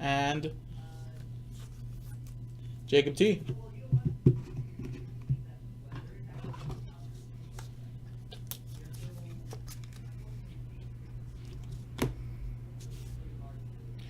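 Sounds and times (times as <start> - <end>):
steady low hum: 0.0 - 14.0
trading cards rustling: 7.4 - 10.3.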